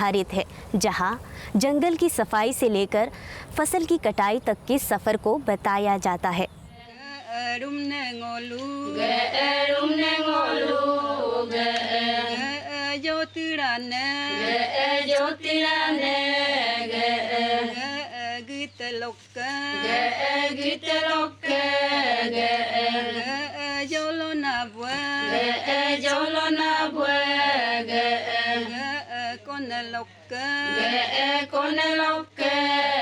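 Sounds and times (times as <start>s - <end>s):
folk singers chanting: 6.7s - 33.0s.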